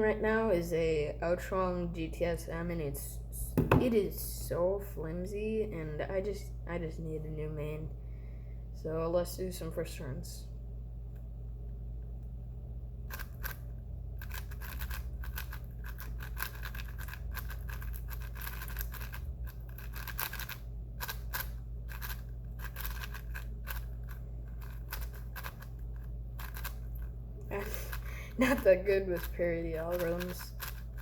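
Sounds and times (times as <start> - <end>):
puzzle cube plastic clicks: 13.1 - 28.1, 29.9 - 31.0.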